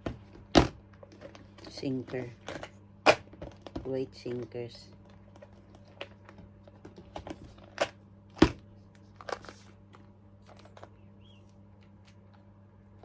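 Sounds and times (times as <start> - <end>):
faint low hum: 0.0 - 13.0
packet crinkling and clicking: 8.9 - 11.0.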